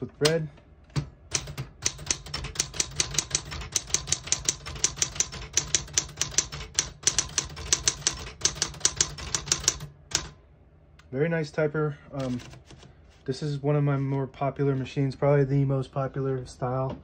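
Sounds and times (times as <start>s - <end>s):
typewriter keys clacking: 1.0s - 10.3s, 12.2s - 12.9s.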